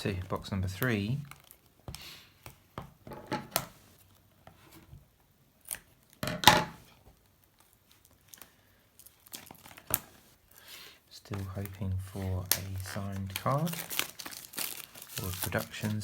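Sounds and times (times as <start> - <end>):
wrapping clicks and rustles: 0.7 - 1.8, 6.9 - 16.0
wrapping tearing: 0.8 - 2.3, 5.6 - 6.2, 7.2 - 10.7, 11.3 - 16.0.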